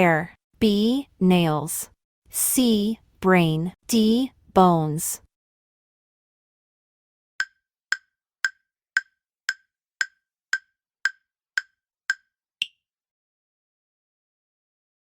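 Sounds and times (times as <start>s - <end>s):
wood-block-like timer ticks: 7.4s - 12.8s.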